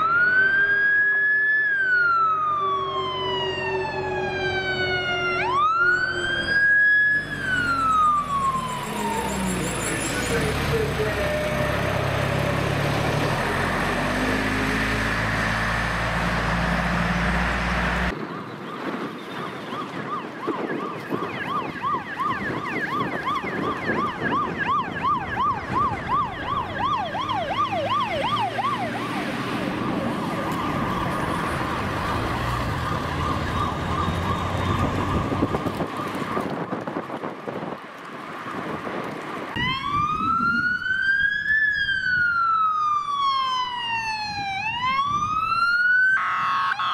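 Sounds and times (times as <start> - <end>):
siren yelping and wailing: 0.0 - 13.5, 18.1 - 37.0, 39.5 - 46.9
heavy truck engine rumbling: 2.6 - 19.1, 22.4 - 41.0.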